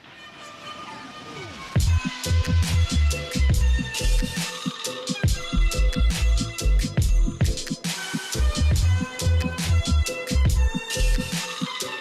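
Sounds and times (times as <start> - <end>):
electronic music: 1.2 - 12.0
heavy bass hits: 1.8 - 4.3.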